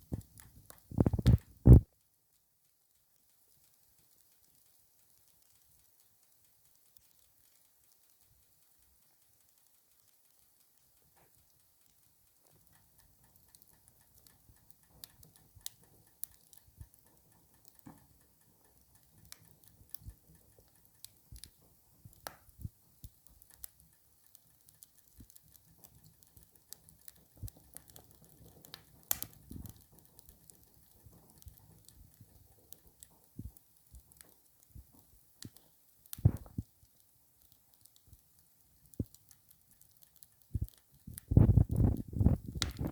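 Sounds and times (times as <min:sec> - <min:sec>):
wood fire crackling and popping: 0:00.0 - 0:42.9.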